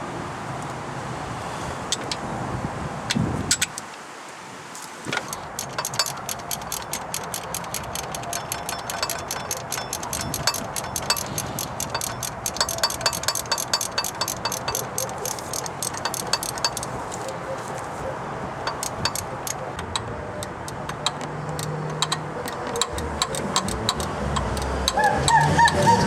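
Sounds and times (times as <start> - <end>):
ratchet wrench clicking: 5.1 - 17.4, 18.6 - 26.0.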